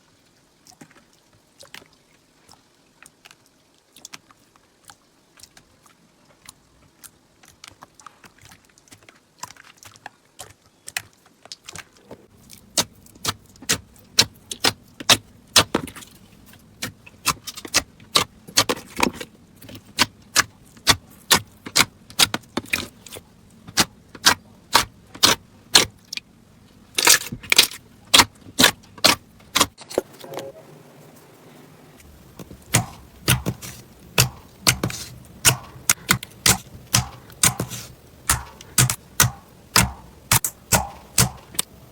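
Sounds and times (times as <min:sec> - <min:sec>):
crunchy slime crackling: 0:32.0 - 0:41.8.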